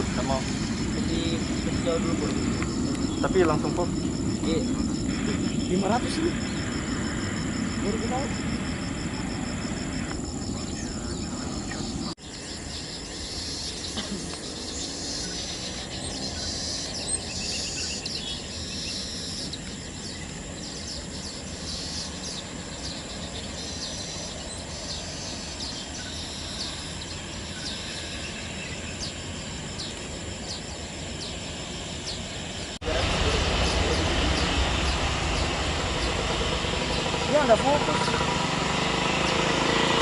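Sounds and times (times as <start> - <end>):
steady outdoor hiss: 0.0 - 40.0
high chirps and trills: 32.9 - 39.9.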